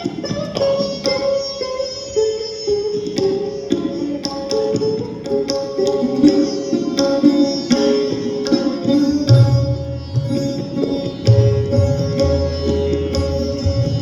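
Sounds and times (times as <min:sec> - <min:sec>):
plucked string melody: 0:00.0 - 0:14.0
tabla bass strokes: 0:08.1 - 0:14.0.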